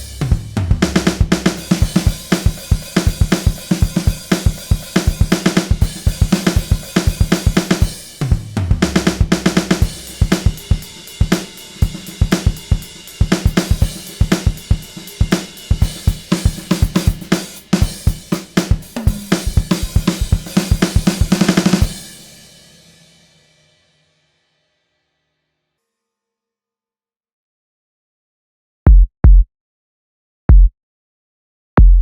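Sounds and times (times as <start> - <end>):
drum kit beat: 0.0 - 23.0, 28.9 - 29.5
cymbal ringing: 0.0 - 23.5.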